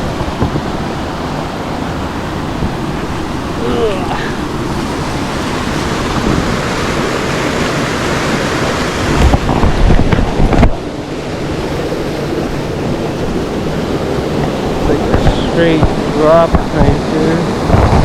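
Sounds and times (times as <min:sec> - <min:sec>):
wind buffeting on microphone: 0:00.0 - 0:18.0
creek water pouring over waterfall: 0:11.9 - 0:17.7.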